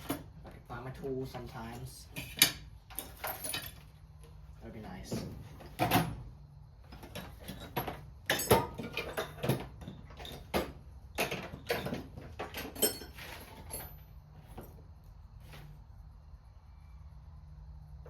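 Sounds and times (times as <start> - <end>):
hand tools clinking and knocking: 1.3 - 4.4, 6.9 - 14.8.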